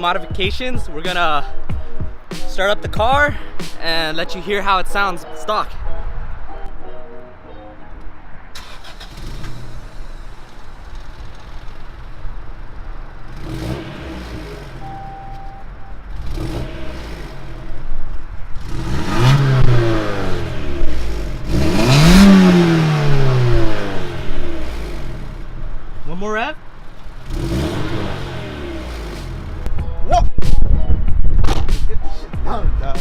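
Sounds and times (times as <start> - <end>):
car engine idling and revving: 8.5 - 29.8.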